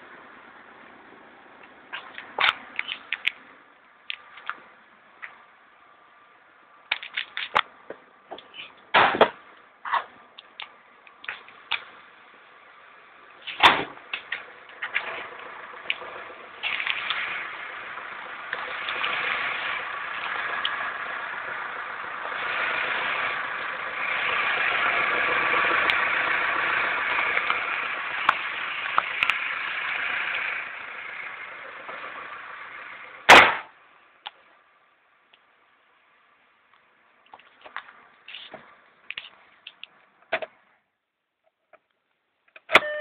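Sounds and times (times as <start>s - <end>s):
loud thump: 8.9s - 9.4s, 13.6s - 14.0s, 33.3s - 33.7s
car engine running: 10.7s - 34.2s
engine whistle: 42.8s - 43.0s.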